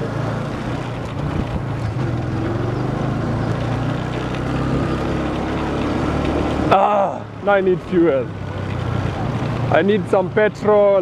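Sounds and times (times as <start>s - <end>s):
motorcycle engine running: 0.0s - 6.8s
wind and road noise: 0.0s - 11.0s.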